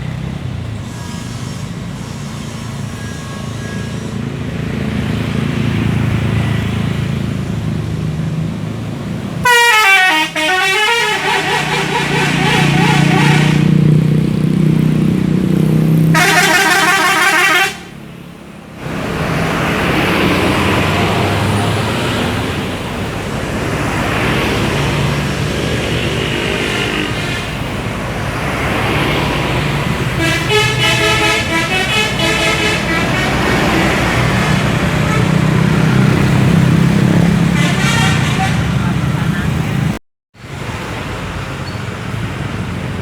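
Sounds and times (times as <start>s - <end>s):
bus engines and traffic: 0.0s - 43.0s
multi-tone air horns jingle: 0.8s - 5.2s, 9.4s - 13.8s, 16.1s - 18.0s, 30.2s - 35.4s.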